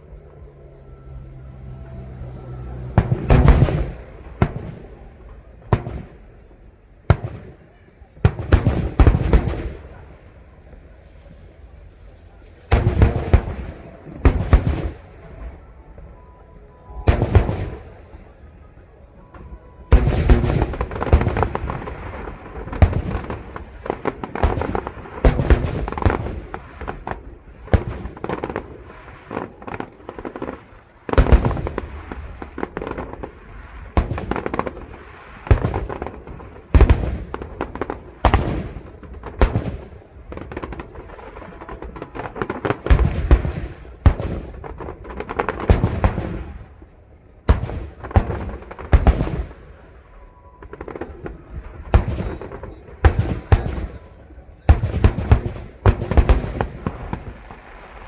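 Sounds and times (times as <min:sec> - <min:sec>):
firework booms: 0:00.0 - 0:58.0
firework crackling: 0:00.0 - 0:58.0.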